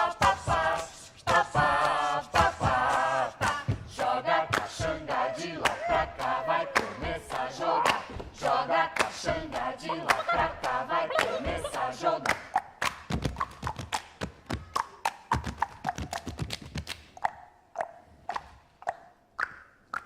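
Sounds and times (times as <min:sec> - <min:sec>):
choir singing: 0:00.0 - 0:12.6.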